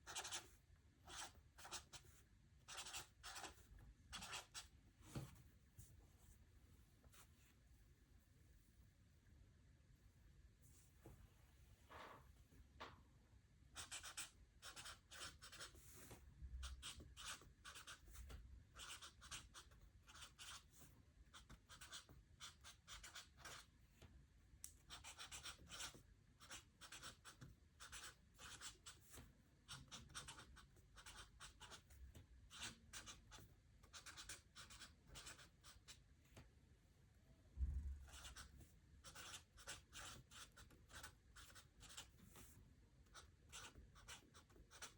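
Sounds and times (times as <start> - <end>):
pen scratching on paper: 0.0 - 0.5, 1.1 - 4.7, 13.8 - 23.7, 24.9 - 36.0, 38.0 - 42.5, 43.1 - 44.9.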